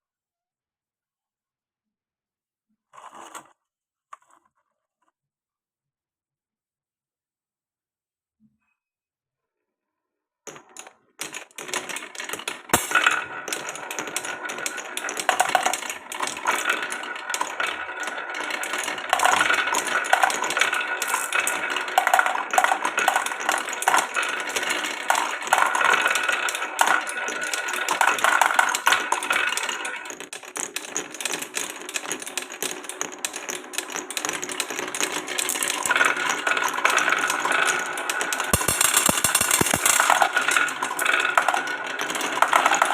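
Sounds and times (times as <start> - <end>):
marbles rolling down wooden run: 10.5 - 42.9.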